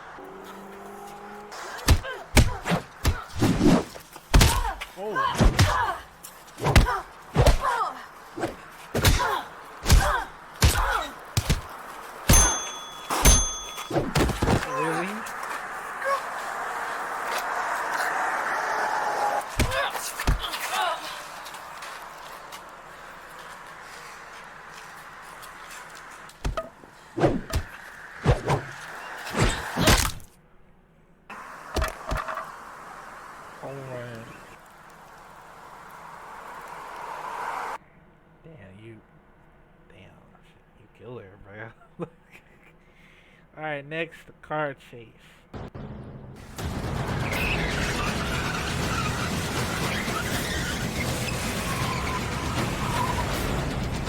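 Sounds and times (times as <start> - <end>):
fight whacks and thuds: 1.6 - 6.0, 6.6 - 7.8, 8.4 - 14.7, 19.5 - 20.6, 26.4 - 28.7, 29.3 - 30.3
metallic ringing strikes: 12.3 - 14.2
hard hits: 45.6 - 50.0.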